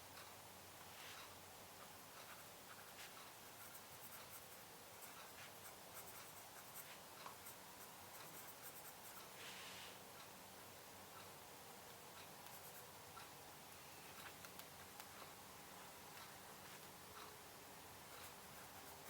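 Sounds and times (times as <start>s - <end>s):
faint clicks and taps at desk: 14.2s - 15.4s.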